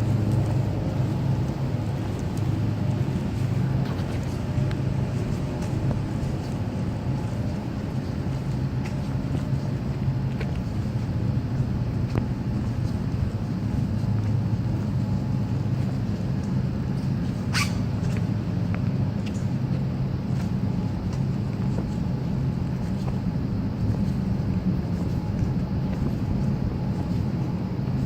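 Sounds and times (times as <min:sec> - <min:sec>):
low mechanical hum: 0:00.0 - 0:28.0
short high squeak: 0:17.5 - 0:17.9.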